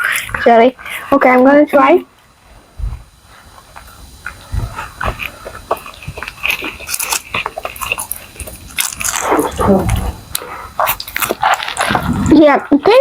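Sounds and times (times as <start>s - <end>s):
wet chewing and mouth smacks: 3.6s - 12.4s
short low vocal sound: 9.4s - 10.3s.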